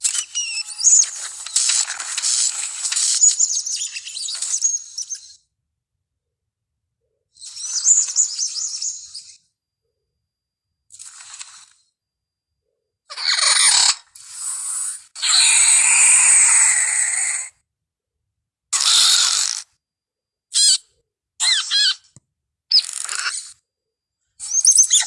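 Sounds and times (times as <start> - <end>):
creature chirps and screeches: 0.0 - 5.4, 13.1 - 17.5, 18.7 - 19.7, 20.5 - 20.8, 21.4 - 22.1, 22.7 - 23.6
creature squeals: 13.1 - 14.4, 15.2 - 17.5, 18.8 - 19.7, 22.7 - 23.6.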